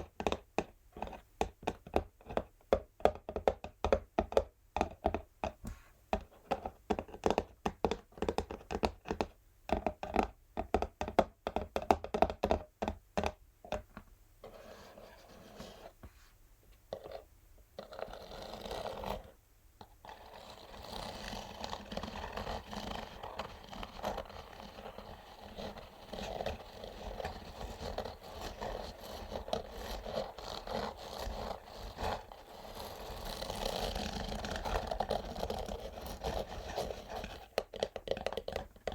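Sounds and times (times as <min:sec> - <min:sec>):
fingernails tapping on cardboard: 0:00.0 - 0:14.0, 0:22.1 - 0:38.9
fingernails scratching cardboard: 0:14.4 - 0:16.0, 0:17.8 - 0:19.3, 0:20.0 - 0:38.9.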